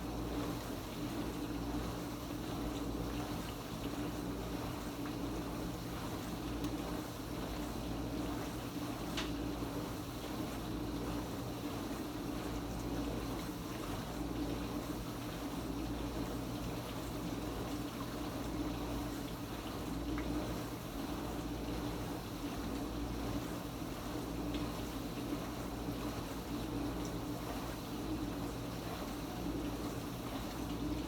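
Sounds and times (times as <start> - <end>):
dishwasher pump motor hum: 0.0 - 31.0
faint tick: 9.1 - 9.4.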